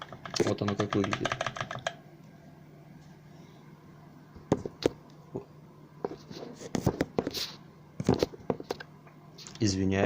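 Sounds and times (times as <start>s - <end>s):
mechanical keyboard keystrokes: 0.0s - 2.0s.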